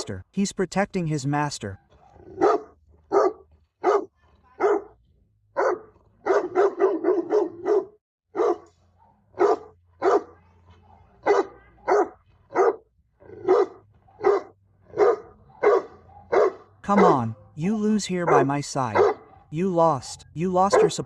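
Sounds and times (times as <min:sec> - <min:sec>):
dog barking: 0:01.9 - 0:05.0, 0:05.6 - 0:17.3, 0:18.2 - 0:19.5, 0:20.7 - 0:21.0.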